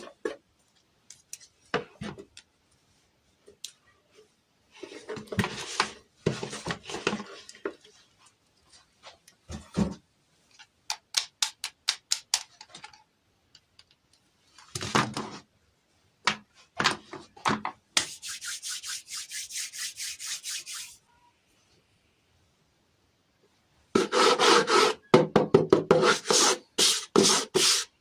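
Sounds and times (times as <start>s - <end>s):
sharp clicks and taps: 10.9s - 12.5s
rhythmic scraping: 18.0s - 21.0s.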